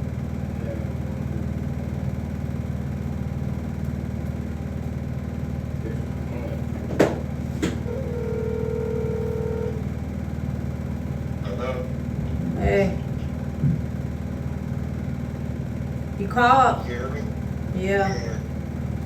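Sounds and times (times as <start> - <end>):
steady low hum: 0.0 - 19.0
steady held tone: 7.8 - 9.9.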